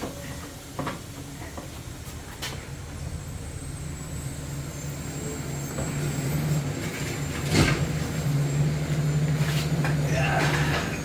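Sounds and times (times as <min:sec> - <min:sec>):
garbage truck engine humming: 0:00.0 - 0:11.0.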